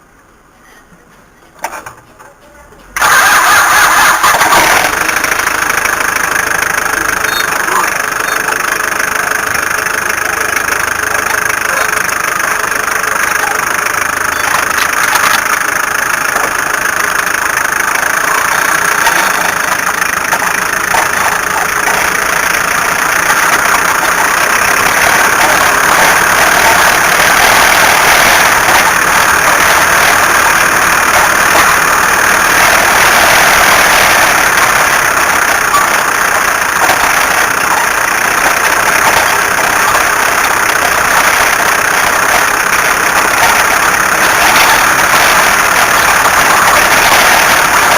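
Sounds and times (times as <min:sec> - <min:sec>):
car engine running loudly: 0:03.0 - 0:47.9.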